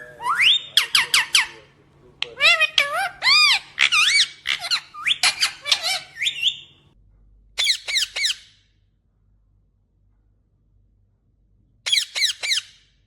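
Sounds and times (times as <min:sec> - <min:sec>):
parakeet squawking: 0:00.0 - 0:06.9, 0:07.6 - 0:08.5, 0:11.9 - 0:12.8.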